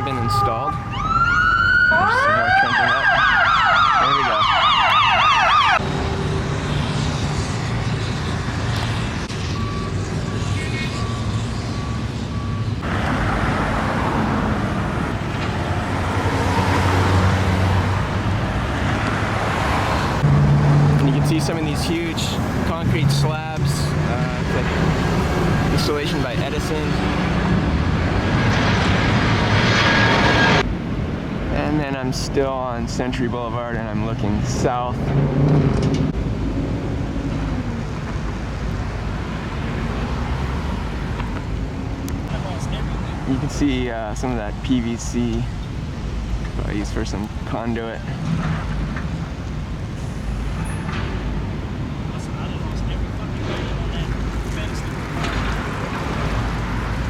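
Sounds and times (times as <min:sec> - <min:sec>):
reversing alarm beeping: 0:00.0 - 0:01.1, 0:07.2 - 0:12.8
road traffic noise: 0:00.0 - 0:57.0
heavy vehicle engine rumbling: 0:03.8 - 0:57.0.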